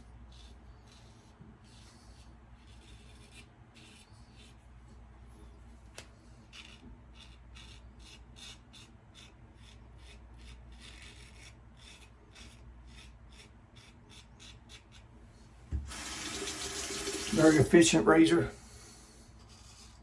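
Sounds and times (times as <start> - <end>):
razor scraping stubble: 0.0 - 4.7, 6.0 - 15.1
tap running: 15.7 - 17.9.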